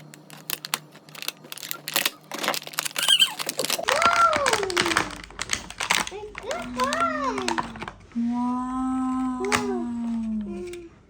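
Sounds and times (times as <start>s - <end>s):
plastic packaging crackling: 0.0s - 8.2s.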